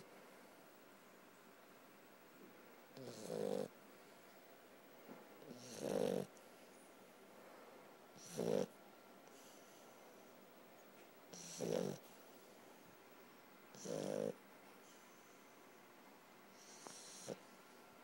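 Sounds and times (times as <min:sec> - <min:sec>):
puppy snoring: 0:03.0 - 0:03.8, 0:05.4 - 0:06.4, 0:08.2 - 0:09.7, 0:11.3 - 0:12.1, 0:13.7 - 0:14.4, 0:16.5 - 0:17.5.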